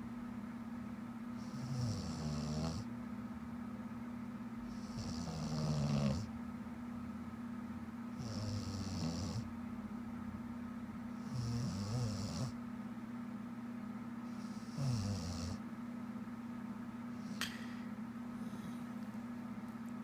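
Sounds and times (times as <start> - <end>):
woman snoring: 1.4 - 2.8, 4.7 - 6.3, 8.2 - 9.5, 11.2 - 12.6, 14.4 - 15.6.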